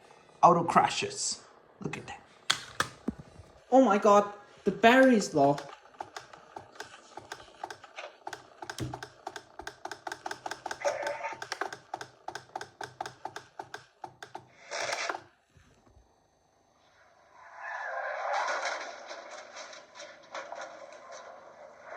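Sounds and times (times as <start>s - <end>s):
rapid mechanical clicking: 4.7s - 15.4s.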